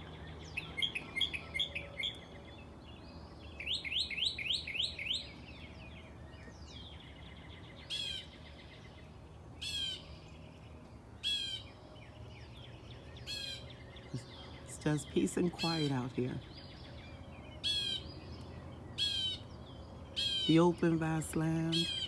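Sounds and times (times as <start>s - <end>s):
wild birds singing: 0.0s - 22.0s.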